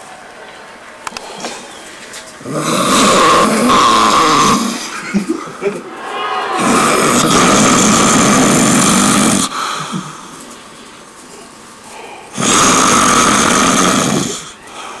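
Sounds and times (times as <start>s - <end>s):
person snoring loudly: 2.4s - 5.0s, 6.6s - 10.3s, 11.9s - 14.6s.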